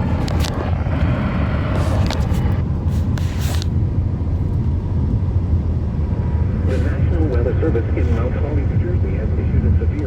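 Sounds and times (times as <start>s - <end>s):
loud low rumble: 0.0s - 2.9s.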